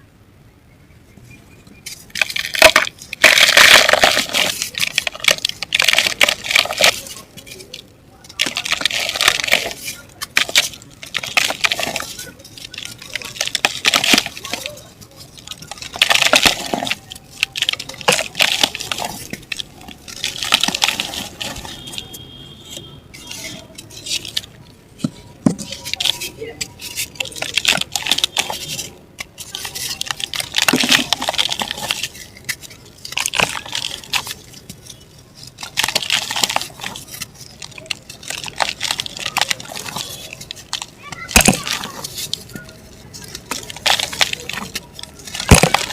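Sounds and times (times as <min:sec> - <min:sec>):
dry mud crumbling: 0:01.8 - 0:45.9.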